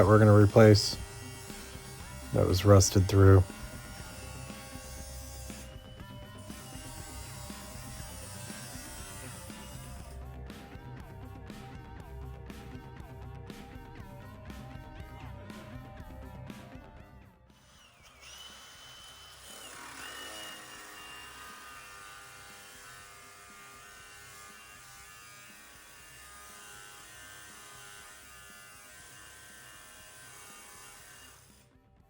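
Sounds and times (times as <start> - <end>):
power tool cutting sheet metal: 0.0 - 10.2, 17.5 - 31.7.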